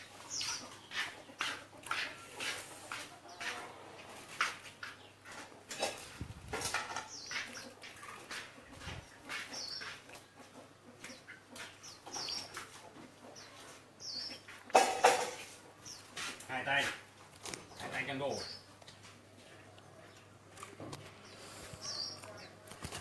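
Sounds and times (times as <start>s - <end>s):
bird chirping: 0.0s - 2.4s, 6.7s - 14.6s, 17.5s - 23.0s.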